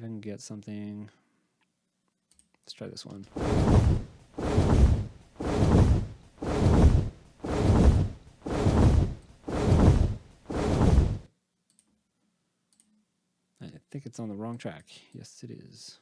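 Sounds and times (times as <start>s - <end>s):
heavy wing-flap whooshes: 3.3s - 11.3s.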